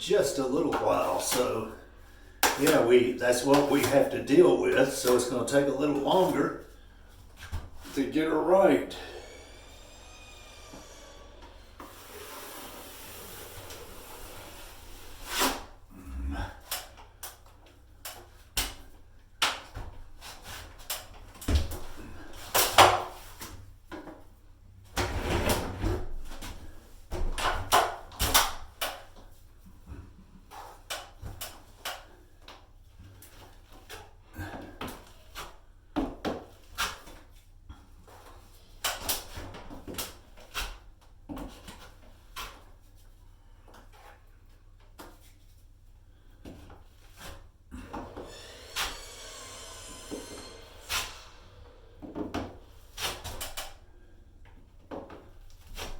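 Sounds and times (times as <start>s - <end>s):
tool scraping a bucket: 2.5s - 16.9s, 47.1s - 54.1s.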